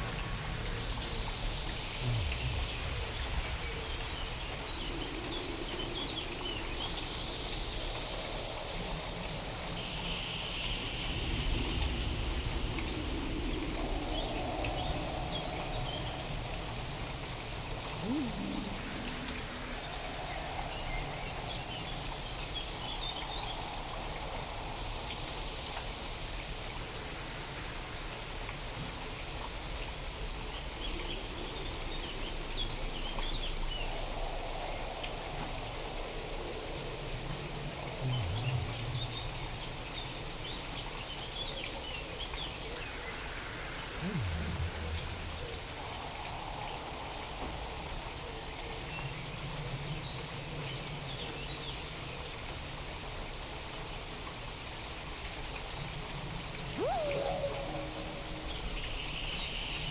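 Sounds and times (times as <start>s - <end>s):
steady rain: 0.0s - 59.9s
faint high chirps: 18.0s - 19.9s, 44.0s - 46.0s, 56.7s - 59.9s
slow tonal bands: 56.8s - 59.2s.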